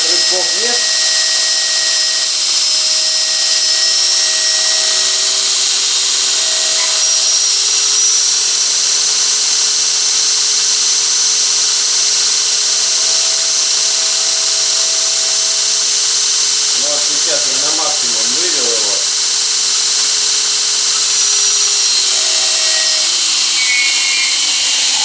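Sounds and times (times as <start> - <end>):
high-pitched whistle: 0.0 - 14.0, 19.8 - 25.0
belt grinder motor running: 0.0 - 25.0.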